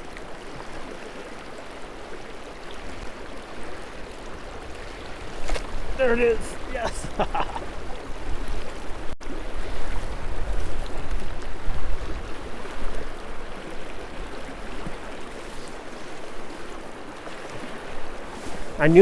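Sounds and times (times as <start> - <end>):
wind rumbling on microphone: 4.1 - 15.0
river current rushing: 4.2 - 9.0.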